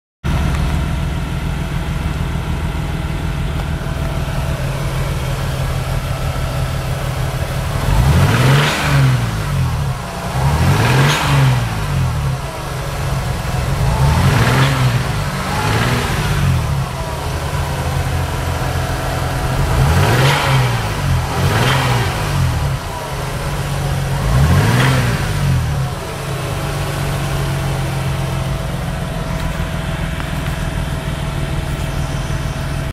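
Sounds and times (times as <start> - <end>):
car engine revving and idling: 0.3 - 32.9
engine knocking: 0.3 - 32.9.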